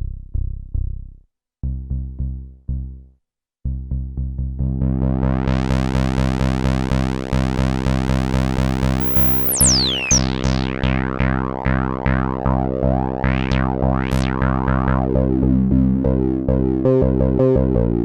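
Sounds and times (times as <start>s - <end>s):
high-pitched synth zaps: 9.0s - 10.2s
synthesizer bass notes: 9.0s - 10.7s, 11.4s - 18.0s.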